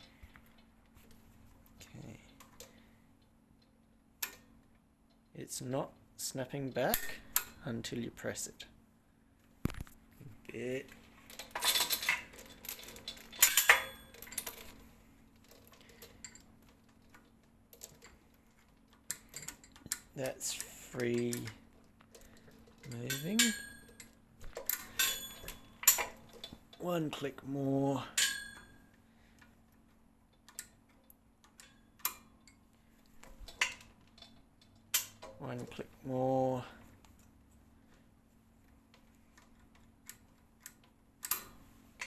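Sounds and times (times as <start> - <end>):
carabiner clinking and rattling: 11.3 - 14.8, 22.1 - 26.8.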